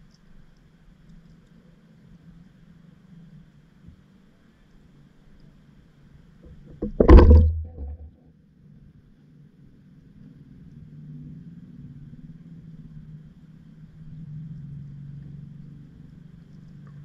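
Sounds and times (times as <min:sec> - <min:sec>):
faint ticks: 0:00.0 - 0:04.0, 0:14.1 - 0:17.0
low underwater hum: 0:00.0 - 0:08.2, 0:09.2 - 0:17.0.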